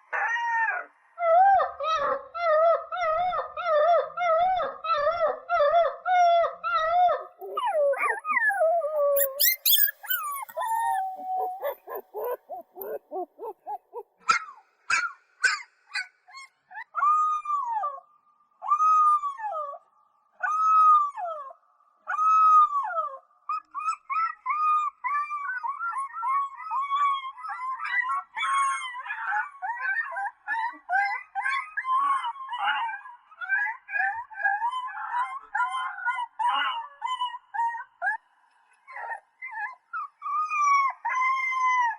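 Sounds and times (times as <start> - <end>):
puppies howling and whimpering: 0.2 - 14.4, 23.8 - 38.2, 38.9 - 41.9.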